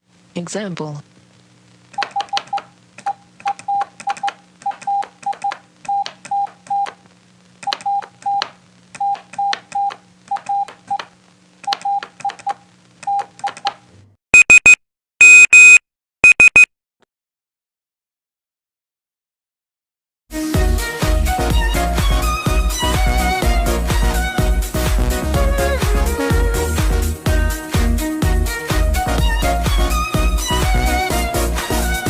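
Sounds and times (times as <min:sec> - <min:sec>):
higher-pitched beeps: 0:14.4 - 0:16.7
morse code beeps: 0:14.4 - 0:16.7.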